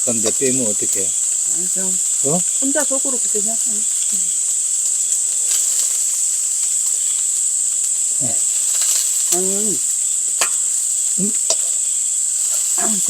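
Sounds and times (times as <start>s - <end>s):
high-pitched insect chorus: 0.0s - 13.0s
murmured voice: 8.2s - 8.5s, 11.2s - 11.6s, 12.8s - 13.0s.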